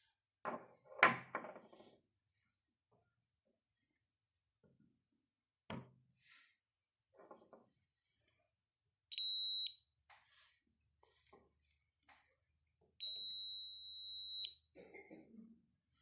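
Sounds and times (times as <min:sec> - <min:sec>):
single knock: 0:05.7 - 0:05.9
high-pitched buzzer beep: 0:09.1 - 0:09.8, 0:13.0 - 0:14.6.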